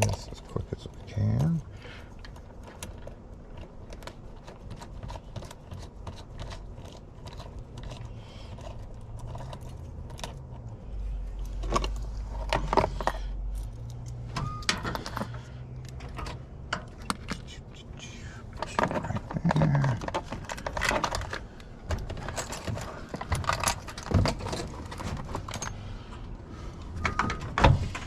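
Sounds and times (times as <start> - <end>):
keys and lock parts jangling: 11.4 - 17.4, 18.6 - 26.3.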